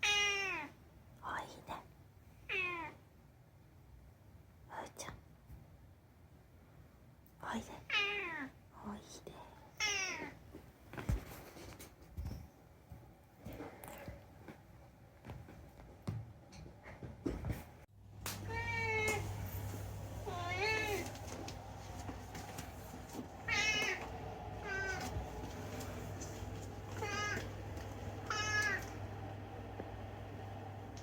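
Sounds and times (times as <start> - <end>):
cat meowing: 0.0 - 0.8, 2.5 - 3.0, 7.9 - 8.5, 9.8 - 10.4, 18.4 - 19.3, 20.2 - 21.2, 23.4 - 25.2, 26.9 - 27.6, 28.2 - 29.0
low steady hum: 10.4 - 31.0.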